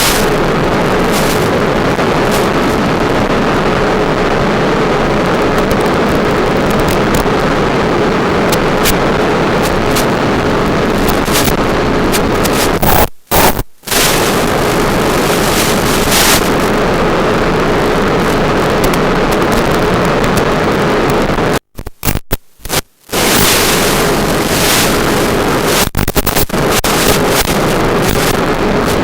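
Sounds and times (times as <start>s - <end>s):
strong wind on microphone: 0.0s - 20.3s
faint steady hum: 0.0s - 29.0s.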